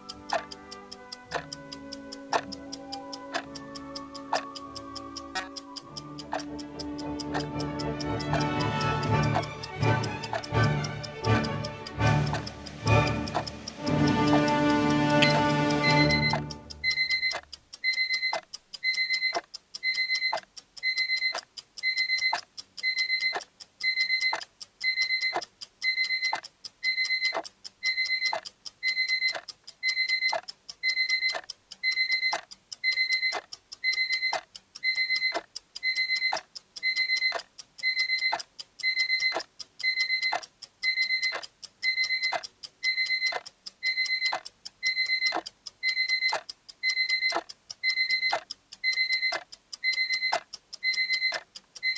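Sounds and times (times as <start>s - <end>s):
electronic alarm beeping: 15.2s - 51.9s.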